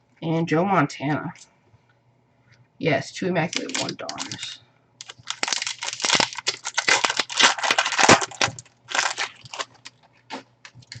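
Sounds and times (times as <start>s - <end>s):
plastic wrapper tearing and crinkling: 3.5s - 11.0s.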